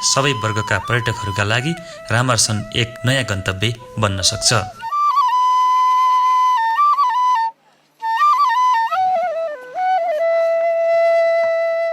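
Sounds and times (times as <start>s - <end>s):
solo flute melody: 0.0s - 11.9s.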